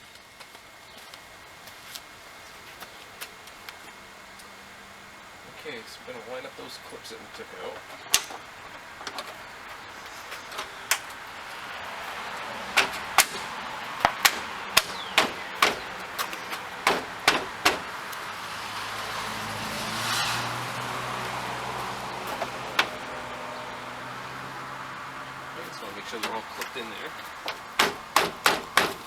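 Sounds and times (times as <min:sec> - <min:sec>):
steady low hum: 0:00.0 - 0:19.8.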